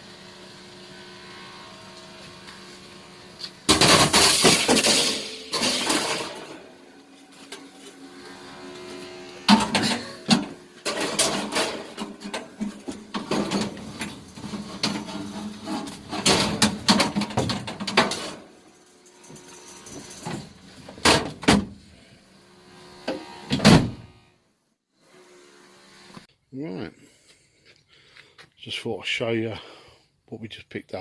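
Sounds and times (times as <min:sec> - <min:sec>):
steady low hum: 0:00.0 - 0:17.8
hard objects clattering and knocking: 0:03.7 - 0:06.6, 0:09.5 - 0:18.4.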